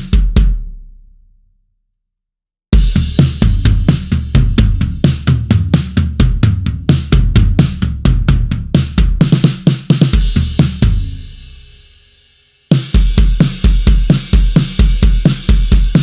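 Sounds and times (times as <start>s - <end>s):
drum kit playing fast groove: 0.0s - 0.7s, 2.8s - 12.0s, 12.7s - 16.0s.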